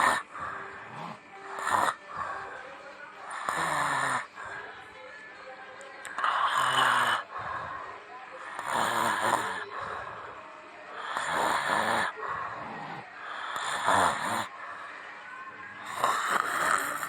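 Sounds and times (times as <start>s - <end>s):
person snoring loudly: 0.0s - 2.4s, 3.3s - 4.5s, 6.2s - 7.7s, 8.5s - 10.0s, 11.0s - 14.5s, 15.8s - 17.0s.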